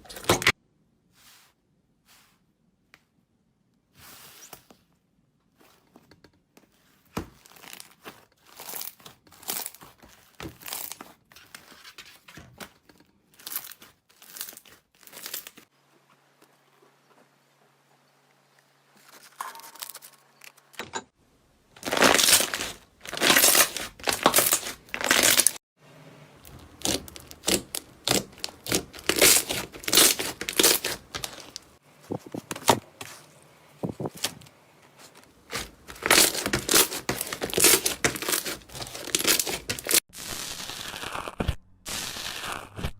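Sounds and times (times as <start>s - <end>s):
slime crackling by hand: 21.8s - 25.6s, 26.4s - 31.8s, 35.0s - 41.6s.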